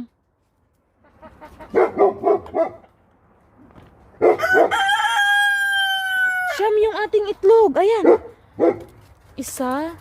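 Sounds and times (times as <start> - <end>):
chickens clucking: 0.7 - 3.6
rooster crowing: 4.3 - 6.6.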